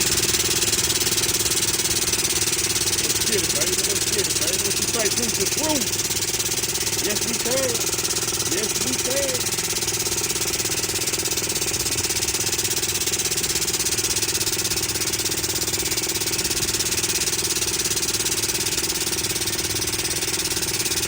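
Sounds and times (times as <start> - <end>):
steady machine hum: 0.0 - 13.1
machine running with fast pulse: 0.0 - 21.0.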